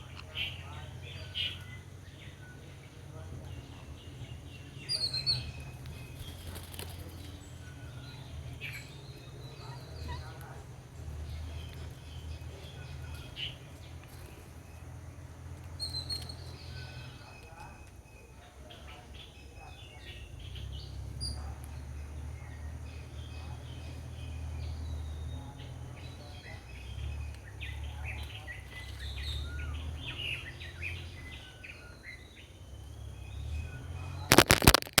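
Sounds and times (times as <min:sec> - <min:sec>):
low steady rumble: 0:00.0 - 0:18.2
birds chirping and calling: 0:00.0 - 0:35.0.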